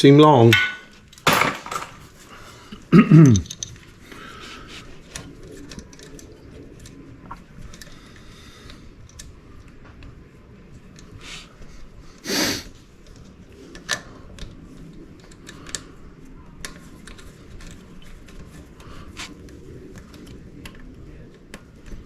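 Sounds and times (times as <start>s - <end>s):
tools and parts clicking: 3.3s - 3.9s
short hissing burst: 12.2s - 12.7s.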